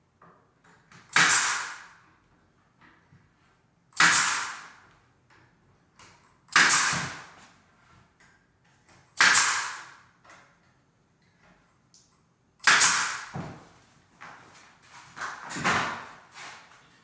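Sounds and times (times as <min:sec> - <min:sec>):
nail gun firing: 0:01.1 - 0:02.0, 0:04.0 - 0:04.8, 0:06.5 - 0:07.3, 0:09.2 - 0:10.0, 0:12.6 - 0:13.3.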